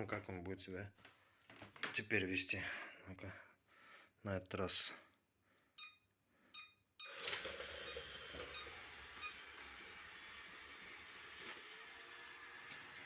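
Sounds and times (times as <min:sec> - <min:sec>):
short electronic beeps: 0:05.8 - 0:07.2, 0:08.6 - 0:09.4
robot vacuum motors running: 0:07.2 - 0:13.0.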